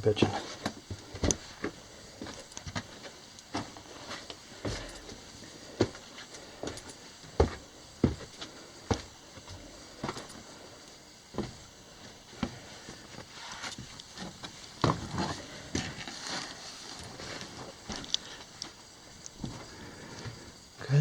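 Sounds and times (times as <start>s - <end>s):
footsteps on rock and dirt: 0.2s - 10.4s, 11.3s - 20.4s
scuffing footsteps: 0.3s - 10.4s, 11.3s - 11.7s.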